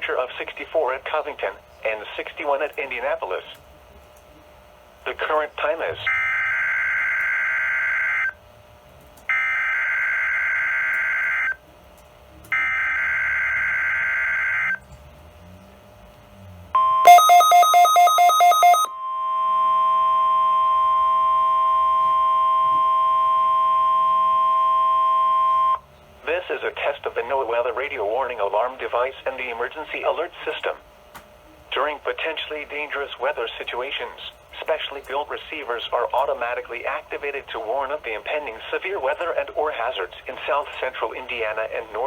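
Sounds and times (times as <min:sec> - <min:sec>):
steady warning alarm tone: 0:06.0 - 0:08.4, 0:09.3 - 0:11.6, 0:12.5 - 0:14.8, 0:16.7 - 0:25.8
buzzing digital data tones: 0:16.8 - 0:25.8
rapid beeps: 0:16.8 - 0:25.8.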